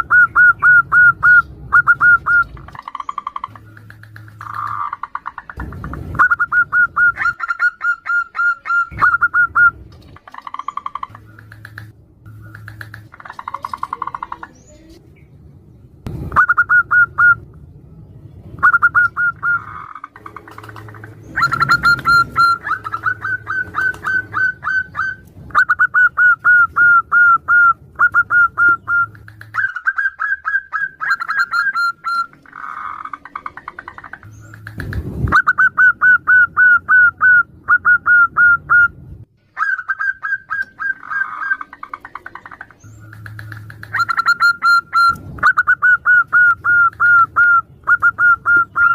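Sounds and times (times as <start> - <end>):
doves cooing: 0.0 - 15.0, 18.6 - 38.9, 39.5 - 48.9.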